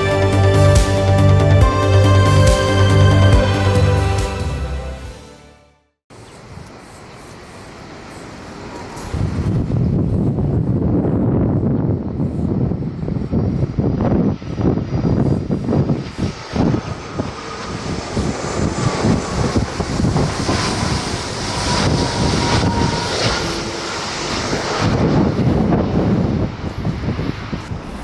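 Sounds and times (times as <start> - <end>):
jet engines roaring: 0.0 - 5.4, 6.3 - 28.0
wind buffeting microphone: 6.4 - 28.0.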